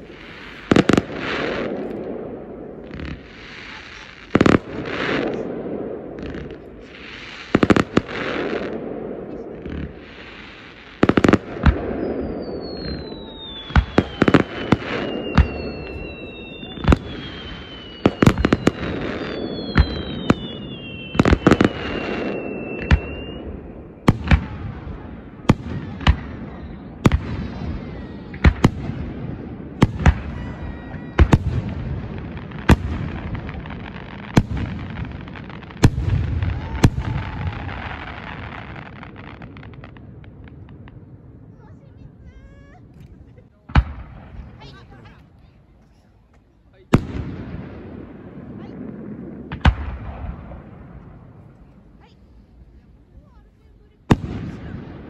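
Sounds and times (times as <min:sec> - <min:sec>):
firework bangs: 0:00.0 - 0:45.6, 0:46.8 - 0:52.6, 0:53.2 - 0:55.0
falling firework whistles: 0:11.0 - 0:24.4, 0:26.0 - 0:28.6.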